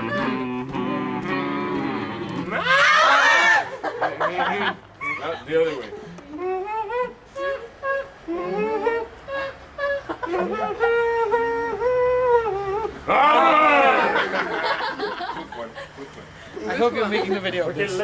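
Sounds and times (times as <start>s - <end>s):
person holding a long note: 0.0s - 2.8s, 6.2s - 13.1s
high warbling cry: 1.4s - 3.8s.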